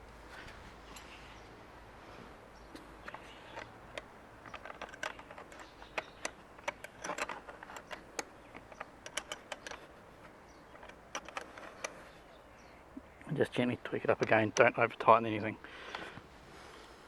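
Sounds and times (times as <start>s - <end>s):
small metallic clicks and taps: 2.7s - 12.0s.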